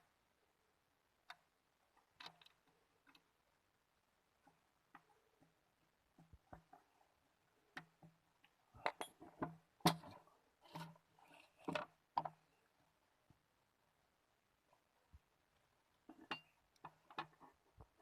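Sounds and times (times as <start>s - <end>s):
small parts and tools clinking: 7.8s - 12.4s, 16.1s - 17.6s.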